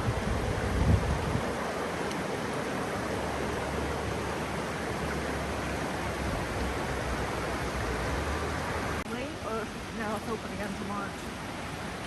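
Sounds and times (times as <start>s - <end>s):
mountain creek rushing: 0.0s - 12.0s.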